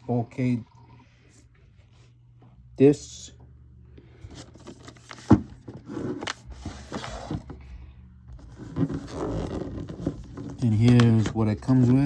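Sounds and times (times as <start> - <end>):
cardboard scrapes and rustles: 8.4 - 10.8.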